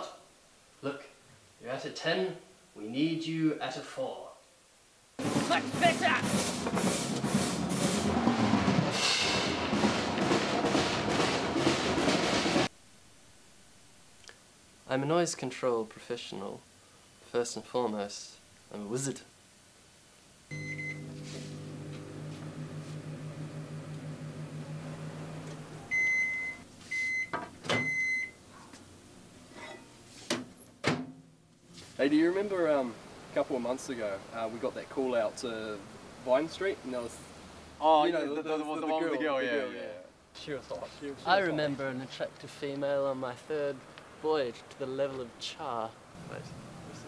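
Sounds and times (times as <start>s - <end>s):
drum kit playing a beat: 5.2s - 12.7s
low humming: 20.5s - 26.1s.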